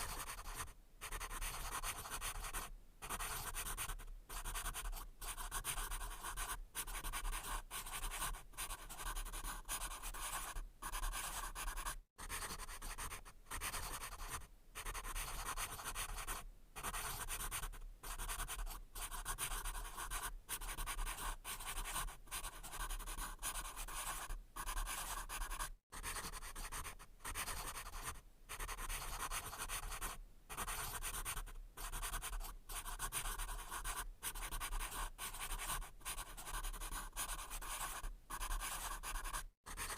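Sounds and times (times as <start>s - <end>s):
pencil writing on paper: 0.0s - 39.9s.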